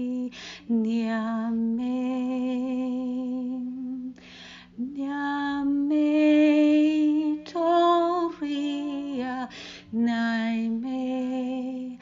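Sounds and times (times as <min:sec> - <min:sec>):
woman singing held tones: 0:00.0 - 0:12.0
woman breathing in: 0:00.3 - 0:00.7, 0:04.2 - 0:04.8, 0:09.5 - 0:09.9.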